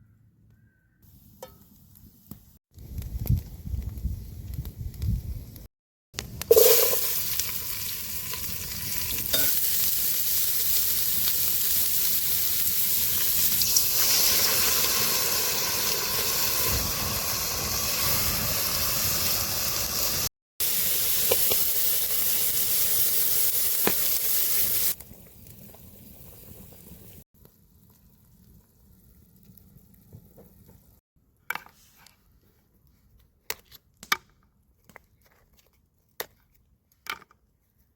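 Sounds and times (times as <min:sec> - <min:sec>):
vegetables sizzling in hot oil: 0:06.5 - 0:25.0.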